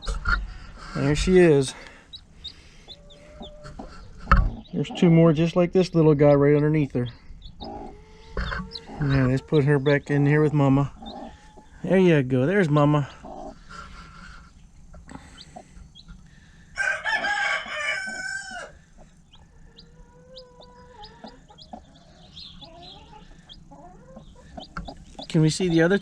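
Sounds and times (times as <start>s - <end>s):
chicks peeping: 0.0s - 26.0s
hen clucking: 0.0s - 26.0s
rooster crowing: 16.7s - 18.8s.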